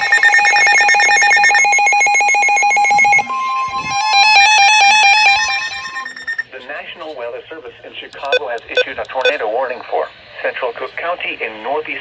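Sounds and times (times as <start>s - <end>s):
steady warning alert tone: 0.0s - 3.3s, 8.2s - 9.4s
weather radio alert alarms: 0.0s - 6.5s, 8.2s - 9.4s.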